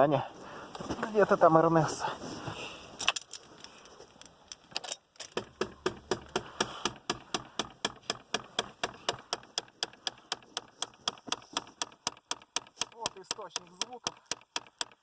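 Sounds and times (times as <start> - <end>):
actuator motor clicking: 5.3 - 15.0.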